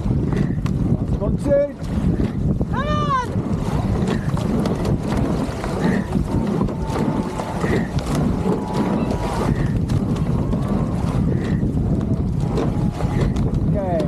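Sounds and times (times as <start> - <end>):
water rushing past boat: 0.0 - 14.0
wind buffeting microphone: 0.0 - 14.0
knocks from boat: 3.2 - 14.0.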